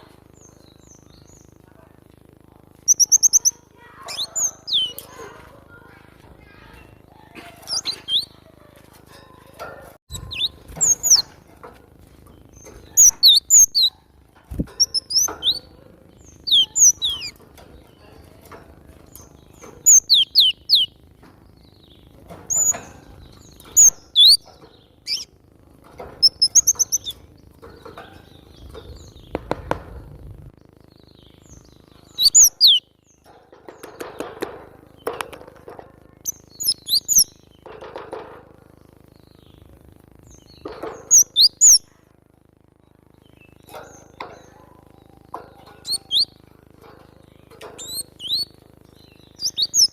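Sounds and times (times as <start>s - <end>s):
soft low bird sounds: 0.0s - 49.9s
bird singing high sharp notes: 31.2s - 32.9s, 45.7s - 46.4s, 47.7s - 49.9s.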